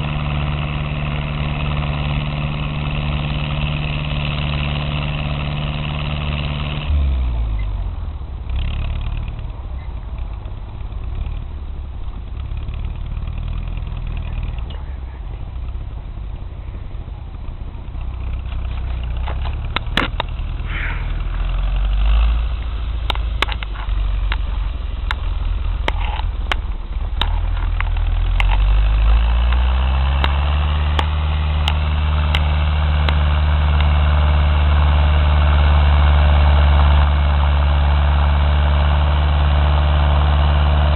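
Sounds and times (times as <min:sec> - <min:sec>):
tractor diesel engine: 0:00.0 - 0:40.9
sharp clicks and knocks: 0:17.9 - 0:20.6, 0:23.0 - 0:34.0.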